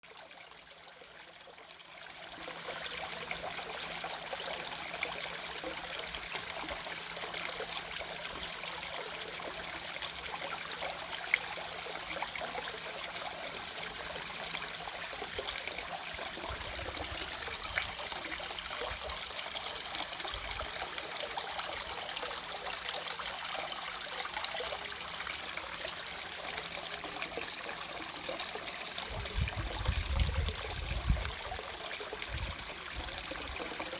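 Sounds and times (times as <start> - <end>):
water running and trickling: 0.0 - 33.9.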